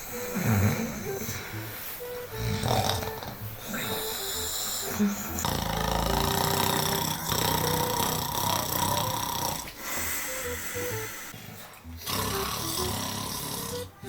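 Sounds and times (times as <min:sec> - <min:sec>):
man snoring: 0:00.0 - 0:01.6, 0:02.3 - 0:14.0
light background tune: 0:00.0 - 0:14.0.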